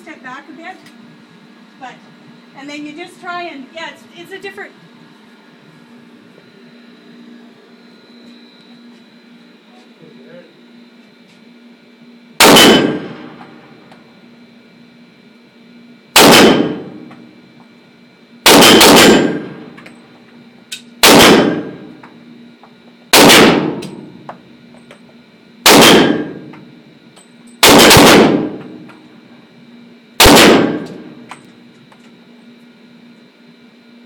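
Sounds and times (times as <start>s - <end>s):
pistol shots with echo: 12.4s - 13.3s, 16.2s - 17.0s, 18.5s - 19.6s, 21.0s - 21.8s, 23.2s - 24.0s, 25.7s - 26.5s, 27.6s - 28.7s, 30.2s - 31.0s.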